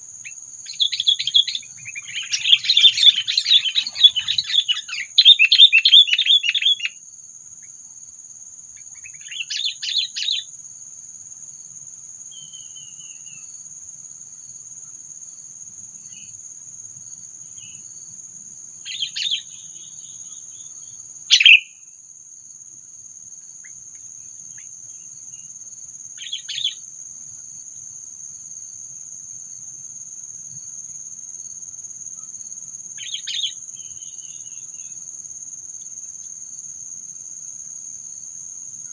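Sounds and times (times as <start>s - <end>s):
high insect drone: 0.0s - 38.9s
bulbuls calling in chattering bursts: 2.0s - 5.7s.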